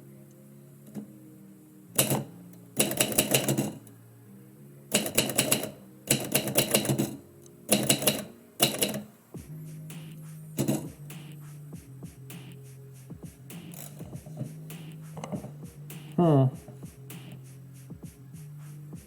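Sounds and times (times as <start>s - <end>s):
typewriter keys striking: 2.0s - 3.8s, 4.9s - 9.1s, 10.6s - 10.9s.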